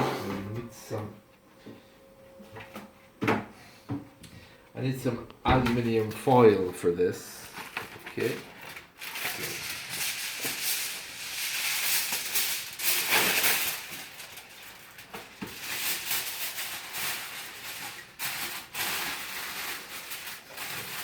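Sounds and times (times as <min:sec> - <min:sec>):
aluminium foil crinkling: 0:07.2 - 0:21.0.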